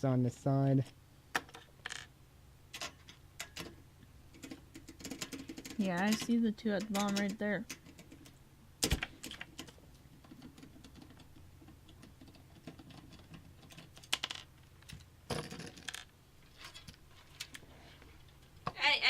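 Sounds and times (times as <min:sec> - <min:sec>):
clicks and metal taps of screws: 0:02.7 - 0:08.4.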